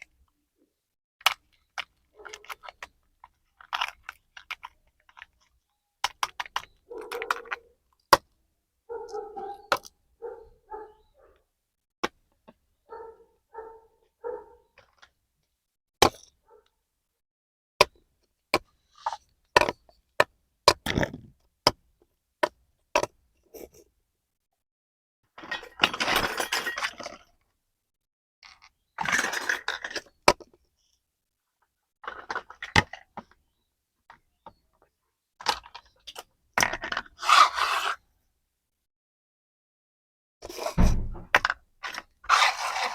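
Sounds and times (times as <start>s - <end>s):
plastic toys scraping and rustling: 1.2s - 7.8s, 25.4s - 27.4s, 28.4s - 31.0s, 32.0s - 33.4s, 35.4s - 38.1s, 40.4s - 42.9s.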